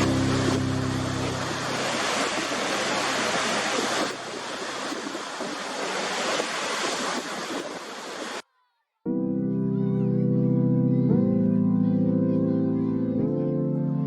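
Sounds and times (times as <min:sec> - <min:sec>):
low held music chord: 0:00.0 - 0:03.2, 0:09.1 - 0:14.0
sea waves and surf: 0:00.0 - 0:08.4.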